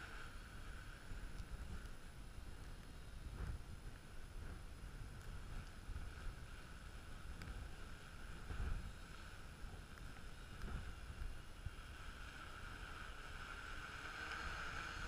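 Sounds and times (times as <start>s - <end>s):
wind buffeting microphone: 1.0s - 13.1s.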